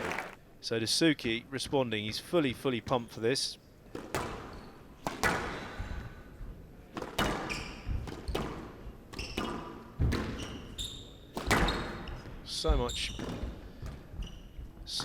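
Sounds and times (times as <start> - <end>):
court shoes squeaking: 3.8 - 6.2, 7.0 - 15.0
squash ball struck and hitting walls: 3.9 - 6.2, 6.8 - 12.4, 13.2 - 14.2.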